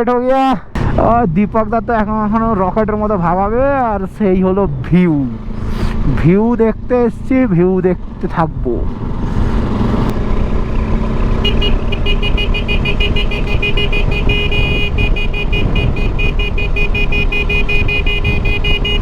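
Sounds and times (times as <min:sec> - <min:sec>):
motorcycle engine rumble: 0:00.7 - 0:19.0
wind noise: 0:08.8 - 0:19.0.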